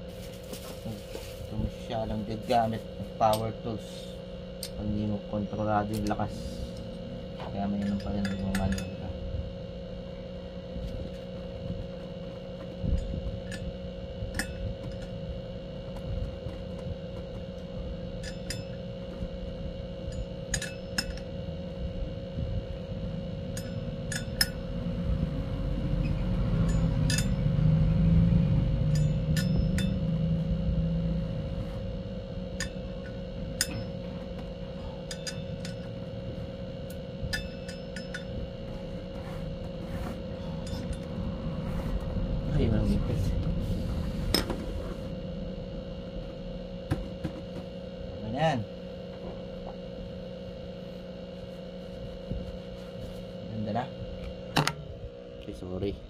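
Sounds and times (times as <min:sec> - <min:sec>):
steady hum: 0:00.0 - 0:56.0
low rumble: 0:21.3 - 0:34.8, 0:35.4 - 0:48.3.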